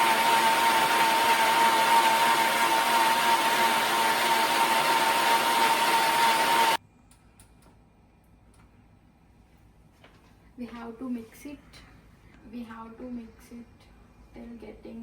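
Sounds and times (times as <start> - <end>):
electric blender running: 0.0 - 6.8.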